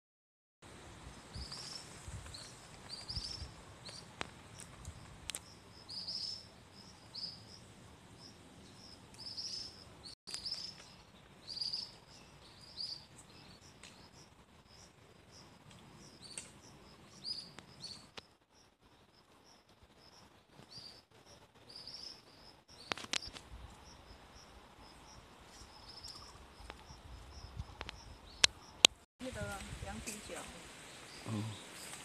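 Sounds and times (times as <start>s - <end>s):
small birds chirping: 1.1s - 32.0s.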